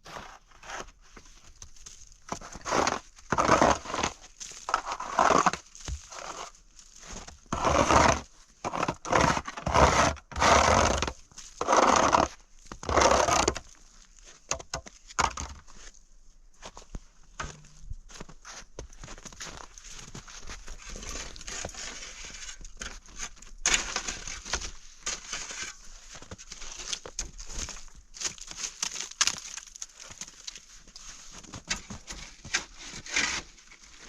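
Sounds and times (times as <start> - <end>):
footsteps crunching through snow: 0.0 - 7.5, 16.6 - 22.4.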